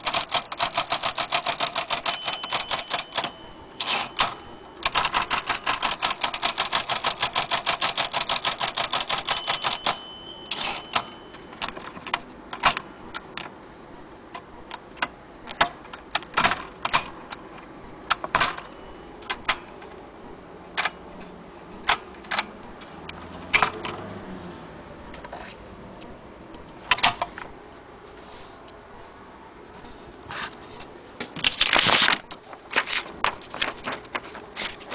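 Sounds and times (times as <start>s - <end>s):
typewriter keystrokes: 0.0s - 12.8s, 14.7s - 17.1s.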